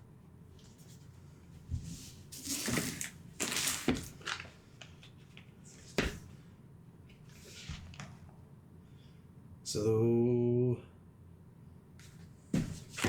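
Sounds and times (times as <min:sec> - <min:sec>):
cardboard rustling and sliding: 0:01.7 - 0:04.6, 0:12.6 - 0:13.0.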